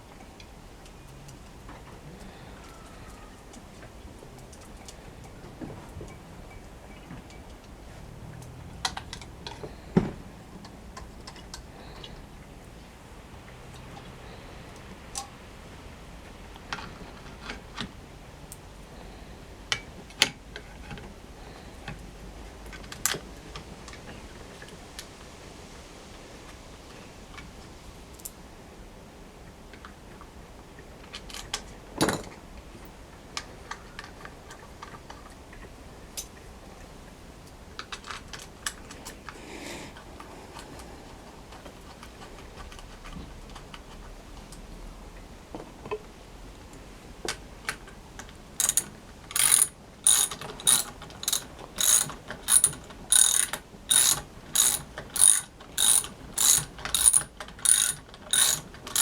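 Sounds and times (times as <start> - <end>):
ratchet wrench clicking: 48.6 - 59.0
tools clicking: 48.6 - 59.0.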